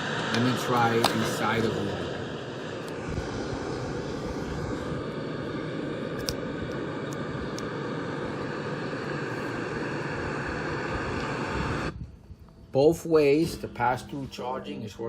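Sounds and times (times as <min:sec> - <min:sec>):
steady rushing drone: 0:00.0 - 0:15.0.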